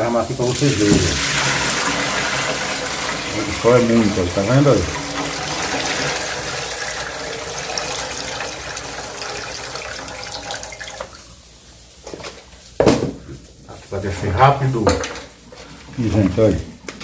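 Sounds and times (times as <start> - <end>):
water pouring and splashing: 0.0 - 11.8.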